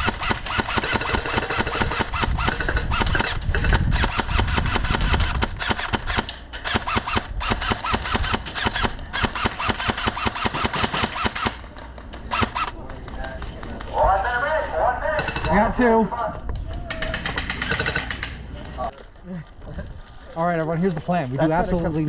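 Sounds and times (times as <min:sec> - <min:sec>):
airsoft guns firing bursts: 0:00.0 - 0:11.6, 0:12.3 - 0:13.2, 0:15.2 - 0:15.7, 0:16.9 - 0:18.4.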